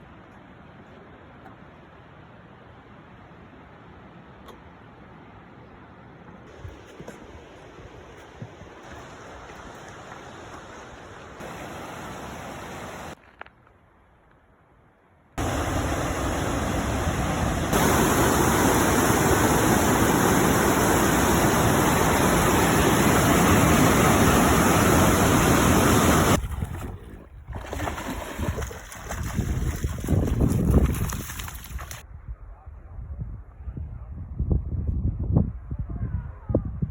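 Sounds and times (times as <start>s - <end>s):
stream water rushing: 6.5s - 13.2s, 15.4s - 26.4s.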